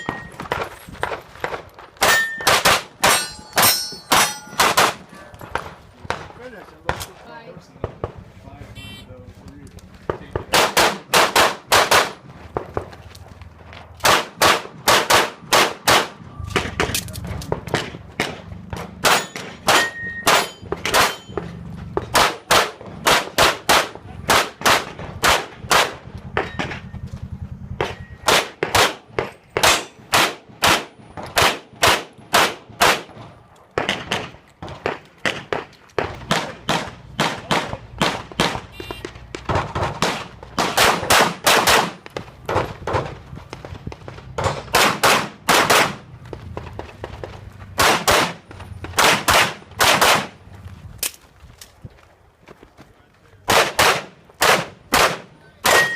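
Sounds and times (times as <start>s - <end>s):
handgun shots: 49.0s - 50.3s, 53.5s - 55.9s.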